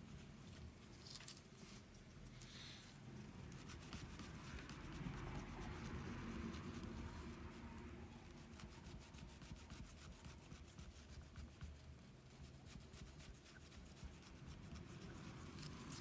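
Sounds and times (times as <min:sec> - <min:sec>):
wiping and rubbing on glass: 0:03.4 - 0:16.0.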